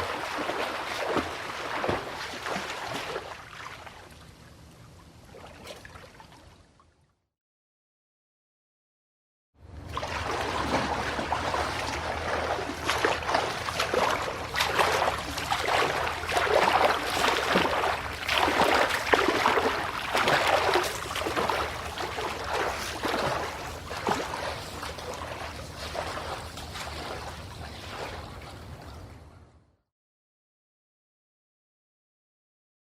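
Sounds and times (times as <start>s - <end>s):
swimming strokes splashing water: 0.0s - 4.5s, 5.2s - 6.7s, 9.7s - 29.2s.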